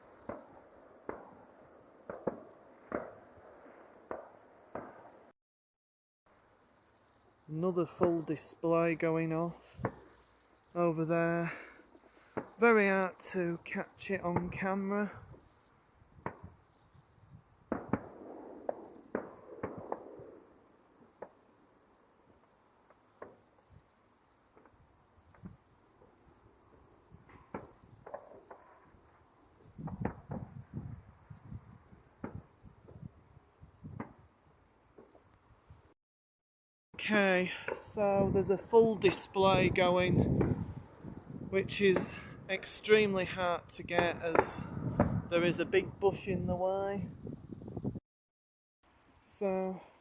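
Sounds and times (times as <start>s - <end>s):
distant firework bangs: 0.0s - 5.3s, 17.6s - 21.4s, 26.7s - 31.0s, 37.5s - 42.5s, 43.9s - 45.3s.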